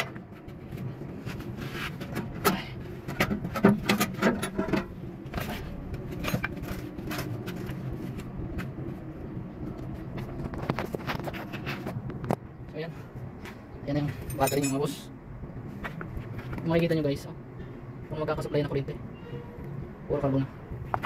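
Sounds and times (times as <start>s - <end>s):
hand tools clinking on metal: 14.2s - 15.0s.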